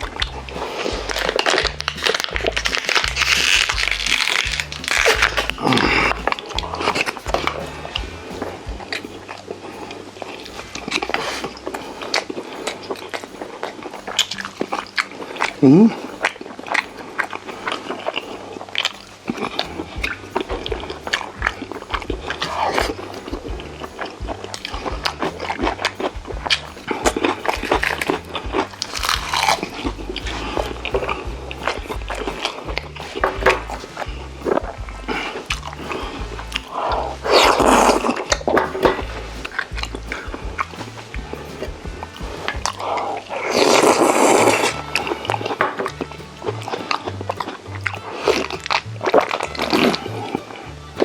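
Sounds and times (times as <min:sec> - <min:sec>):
person chewing food: 0:00.0 - 0:50.4.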